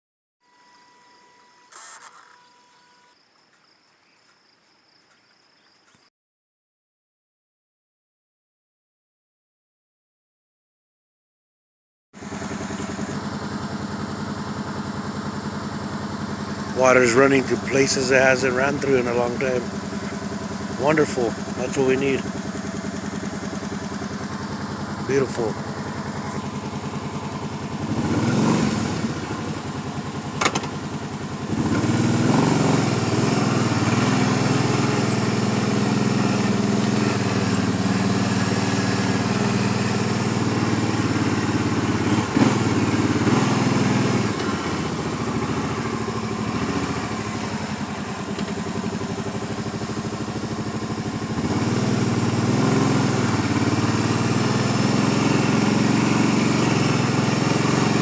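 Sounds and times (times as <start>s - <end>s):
atv engine running: 12.2s - 58.0s.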